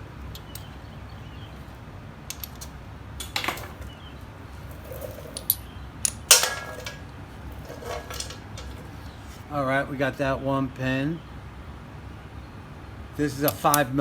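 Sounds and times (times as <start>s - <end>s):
ringing metallic clank: 6.3s - 9.1s.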